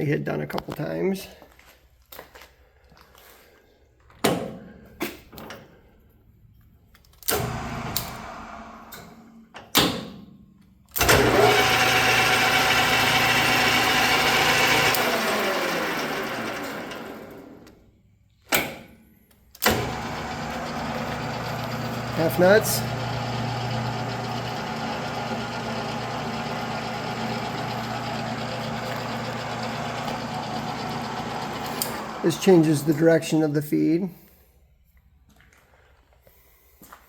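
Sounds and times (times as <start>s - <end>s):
lathe motor running: 11.0s - 17.6s, 19.6s - 33.0s
lathe spinning down: 11.0s - 17.6s, 19.6s - 33.3s.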